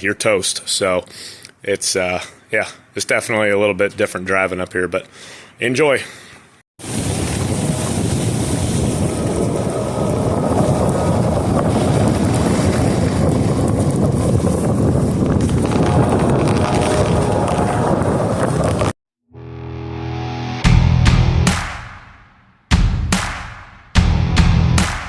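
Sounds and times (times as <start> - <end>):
car road and wind noise: 7.0 - 18.9.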